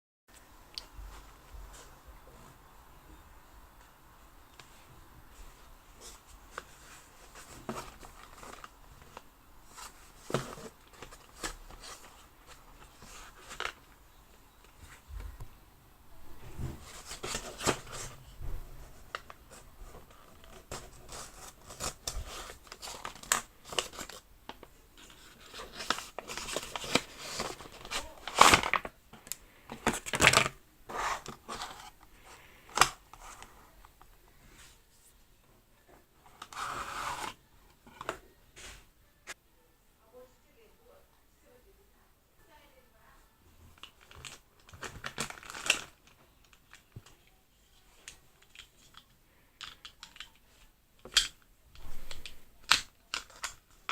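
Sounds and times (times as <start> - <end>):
packaging crinkling: 19.0 - 33.5, 43.7 - 47.2, 51.1 - 53.9
plastic and paper tearing: 20.0 - 28.9, 43.8 - 46.8.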